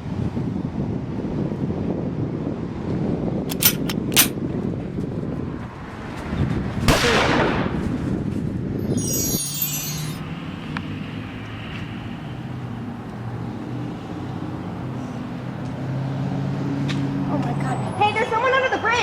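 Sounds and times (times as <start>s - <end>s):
glittering chime effect: 8.8s - 10.2s.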